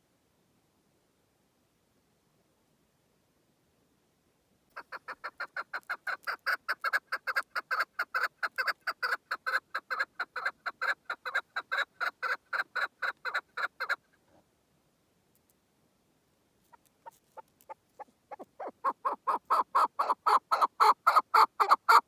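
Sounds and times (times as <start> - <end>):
partridge clucking calls: 4.8 - 14.0, 16.7 - 22.0.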